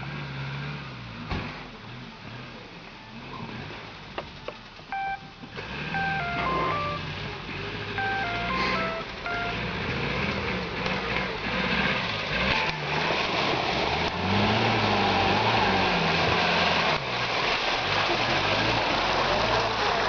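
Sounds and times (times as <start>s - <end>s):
engine revving under load: 5.0s - 20.0s.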